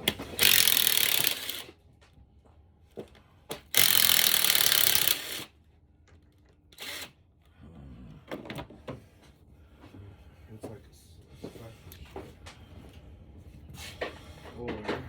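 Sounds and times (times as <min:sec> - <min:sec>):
power tool running: 0:00.0 - 0:01.7, 0:03.7 - 0:05.5, 0:06.7 - 0:07.2.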